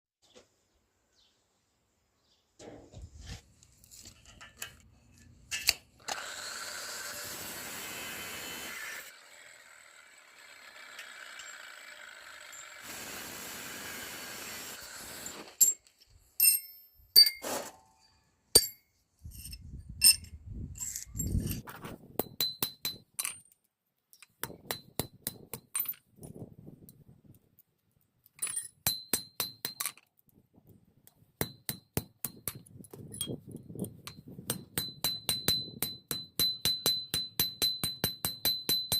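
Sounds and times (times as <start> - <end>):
hammer striking metal: 34.5 - 38.9.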